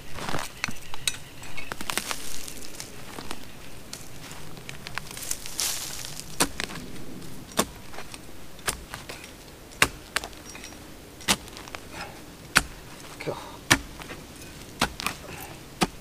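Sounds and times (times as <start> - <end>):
hand tool scraping clay: 7.5 - 16.0
tool striking hard clay: 12.5 - 12.8, 13.7 - 14.1.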